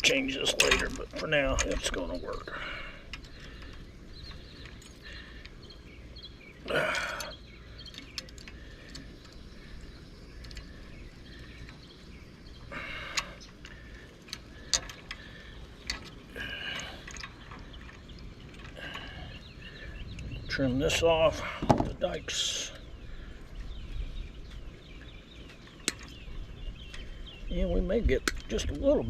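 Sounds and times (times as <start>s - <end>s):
low background rumble: 0.0s - 29.0s
sharp metal clicks: 28.2s - 28.6s.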